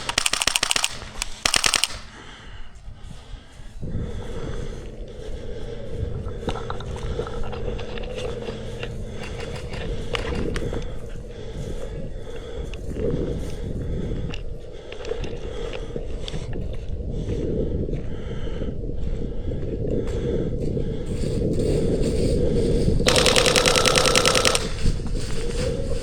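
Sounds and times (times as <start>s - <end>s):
full-auto airsoft gunfire: 0.0s - 2.4s, 23.1s - 25.1s
low rumbling background: 2.0s - 21.1s.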